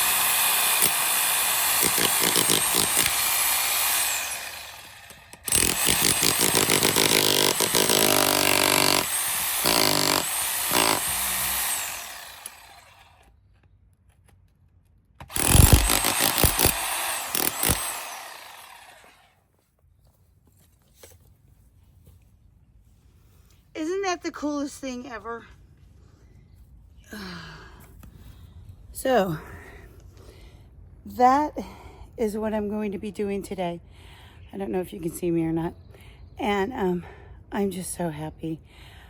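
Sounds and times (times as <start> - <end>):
demolition hammer chiselling concrete: 0.0 - 12.5, 15.3 - 18.6.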